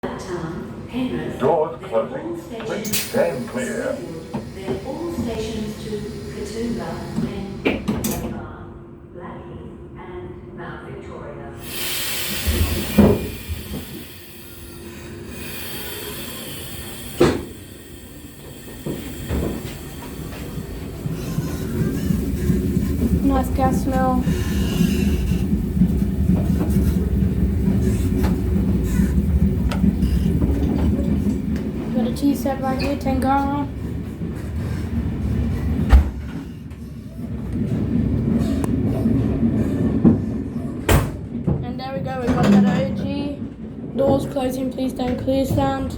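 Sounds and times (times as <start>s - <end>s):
train low hum: 0.0s - 45.9s
air hiss from doors: 11.6s - 14.7s
train doors thudding shut: 12.4s - 14.1s, 35.7s - 36.6s, 40.1s - 42.9s.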